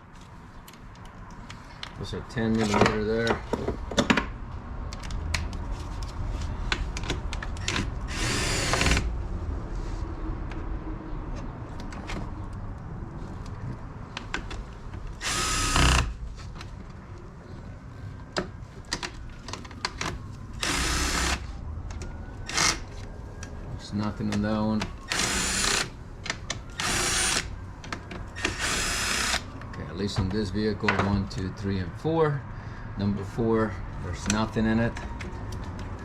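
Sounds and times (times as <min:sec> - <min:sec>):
cordless power driver spinning bolts: 0:15.2 - 0:16.1, 0:20.6 - 0:21.4, 0:25.1 - 0:25.9, 0:28.4 - 0:29.4.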